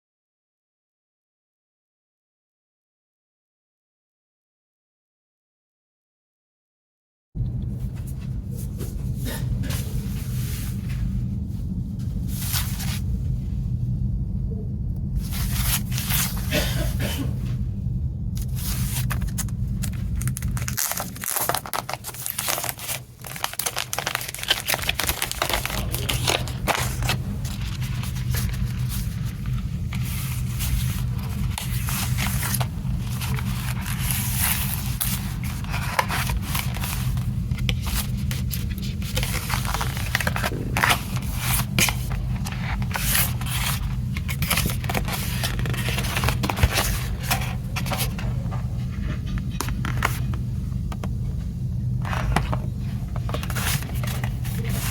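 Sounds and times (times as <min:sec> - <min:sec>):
steady low hum: 0:07.4 - 0:54.9
plastic wrapping crinkling: 0:18.4 - 0:50.4, 0:52.0 - 0:54.9.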